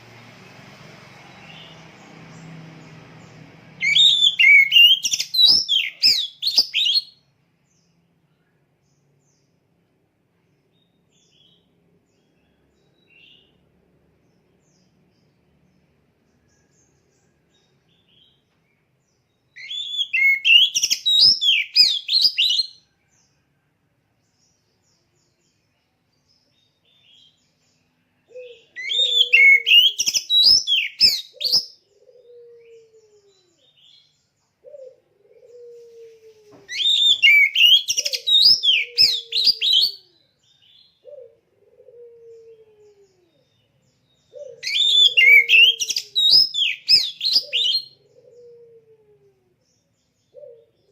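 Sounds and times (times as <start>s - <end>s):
bird singing whistled phrases: 3.8s - 7.2s, 19.6s - 22.8s, 28.8s - 31.7s, 36.7s - 40.1s, 44.6s - 48.0s.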